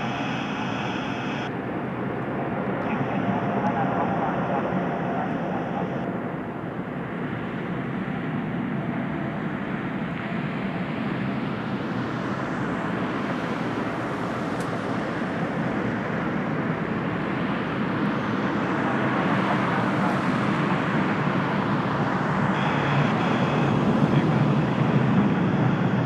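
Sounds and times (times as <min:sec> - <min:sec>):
jet airliner taking off: 0:15.5 - 0:26.0.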